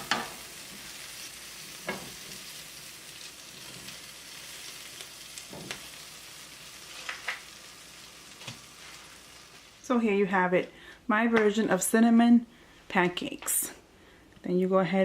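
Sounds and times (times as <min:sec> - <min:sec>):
pancakes sizzling in skillet: 0:00.0 - 0:09.9.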